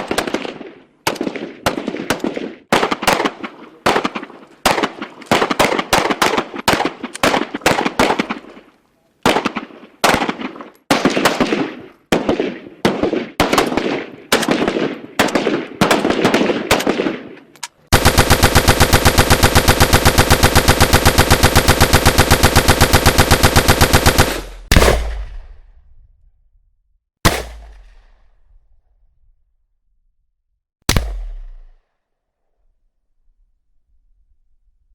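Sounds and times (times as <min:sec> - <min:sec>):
gunshots: 0:00.0 - 0:25.7, 0:27.2 - 0:28.3, 0:30.9 - 0:31.8
automatic gunfire burst: 0:17.9 - 0:25.1.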